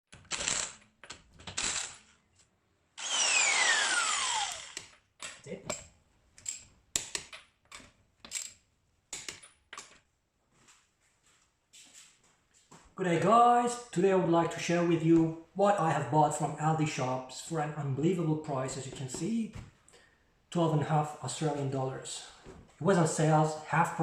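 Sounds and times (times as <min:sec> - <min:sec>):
power tool running: 0:01.6 - 0:02.0, 0:03.0 - 0:04.9.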